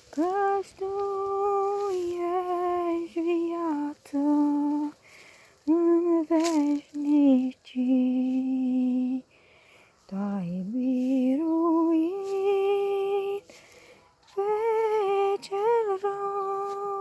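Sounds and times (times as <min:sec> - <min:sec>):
woman humming a hymn: 0:00.0 - 0:05.0, 0:05.6 - 0:09.3, 0:10.1 - 0:13.6, 0:14.3 - 0:17.0.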